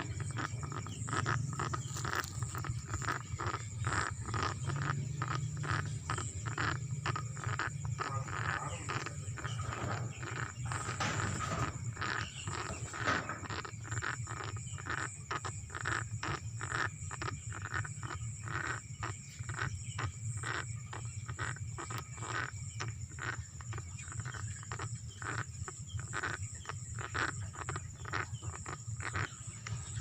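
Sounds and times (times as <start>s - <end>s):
chickens snoring and clicking: 0.0s - 30.0s
steady low hum: 0.0s - 30.0s.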